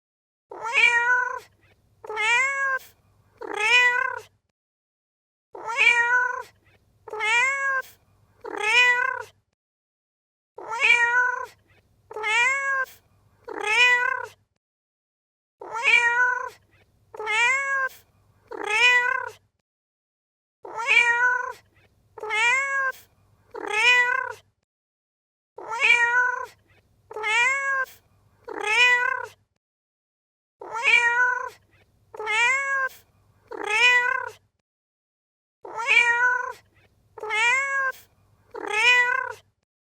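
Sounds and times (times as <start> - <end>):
cat meowing: 0.5 - 4.3, 5.6 - 9.3, 10.6 - 14.4, 15.6 - 19.4, 20.7 - 24.4, 25.6 - 29.4, 30.6 - 34.4, 35.7 - 39.4.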